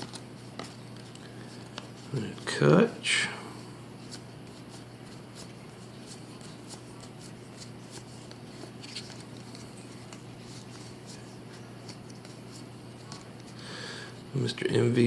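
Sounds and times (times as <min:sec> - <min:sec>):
low steady hum: 0:00.0 - 0:15.0
cards flicking and sliding: 0:04.0 - 0:13.6.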